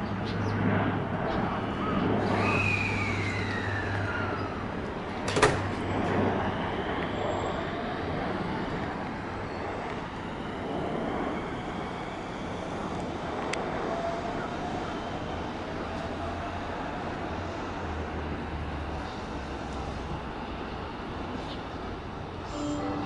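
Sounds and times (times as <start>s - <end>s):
electric train running: 13.9s - 23.0s.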